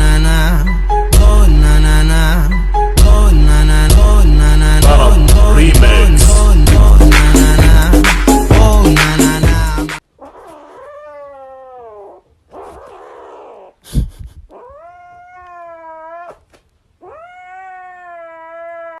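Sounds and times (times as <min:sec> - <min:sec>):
cat yowling: 0:10.2 - 0:13.8, 0:14.5 - 0:19.0.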